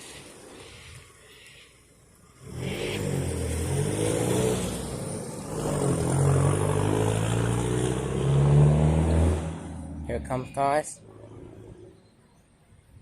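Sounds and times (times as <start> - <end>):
vehicle engine revving: 2.4 - 10.2.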